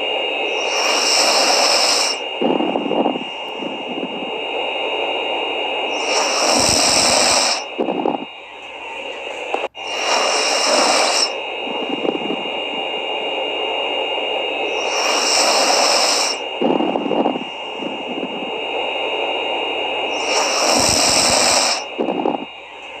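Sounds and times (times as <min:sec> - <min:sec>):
person snoring: 0:00.5 - 0:04.2, 0:05.9 - 0:08.2, 0:09.3 - 0:12.4, 0:14.6 - 0:18.4, 0:20.1 - 0:22.4.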